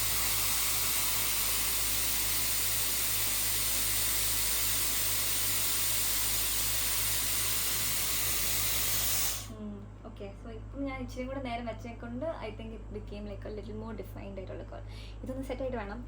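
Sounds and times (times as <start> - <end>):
hair styler blowing air: 0.0 - 9.6.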